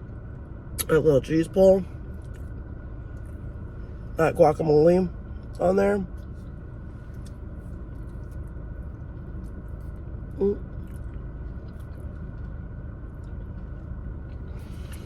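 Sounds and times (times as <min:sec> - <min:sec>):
wet mouth chewing clicks: 0:10.7 - 0:12.6.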